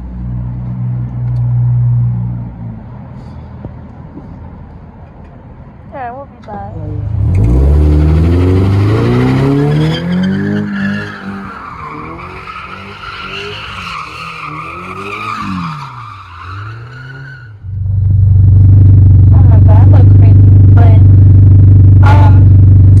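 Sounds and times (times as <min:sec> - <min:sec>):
car engine accelerating: 0:06.8 - 0:23.0.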